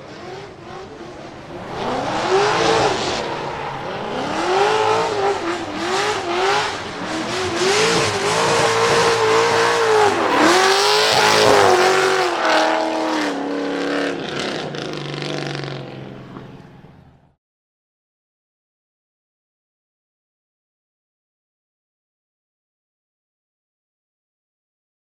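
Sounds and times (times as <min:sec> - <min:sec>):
car engine revving hard: 0:01.4 - 0:16.4
tyre noise: 0:01.5 - 0:12.5.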